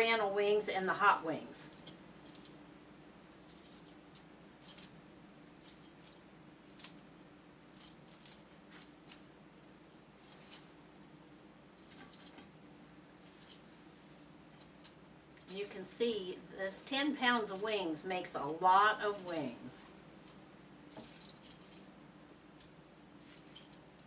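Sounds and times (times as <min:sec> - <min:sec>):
faint steady hum: 0:00.0 - 0:24.0
light clicks and rustles of food: 0:03.3 - 0:05.0, 0:07.7 - 0:09.3, 0:10.2 - 0:10.8, 0:13.2 - 0:15.9, 0:18.4 - 0:24.0.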